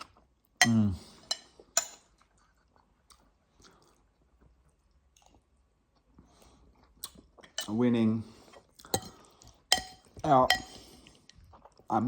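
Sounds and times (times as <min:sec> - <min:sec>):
cutlery clicking on plate: 0:00.6 - 0:02.1
faint chewing: 0:01.2 - 0:07.8.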